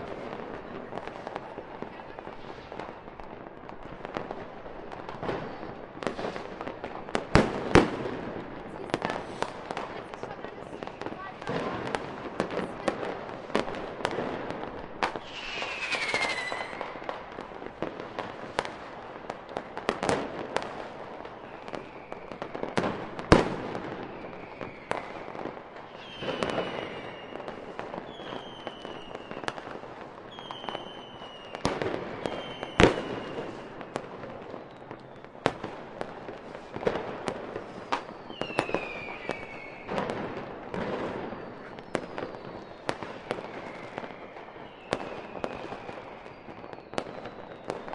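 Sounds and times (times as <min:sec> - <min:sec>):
firework bangs: 0:00.0 - 0:47.9
whistling firework shells: 0:15.0 - 0:17.4, 0:21.4 - 0:22.8, 0:24.0 - 0:29.7, 0:30.3 - 0:35.6, 0:37.6 - 0:40.2, 0:40.8 - 0:47.9.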